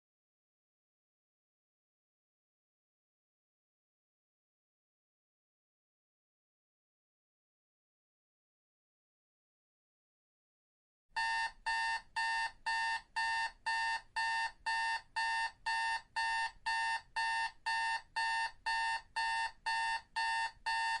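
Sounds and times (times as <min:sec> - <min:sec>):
timer alarm short beeps: 0:11.2 - 0:21.0.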